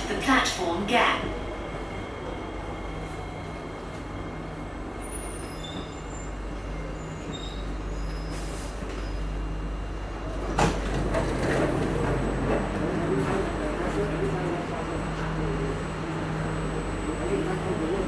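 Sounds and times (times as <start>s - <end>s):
train humming at platform: 0.0s - 18.0s.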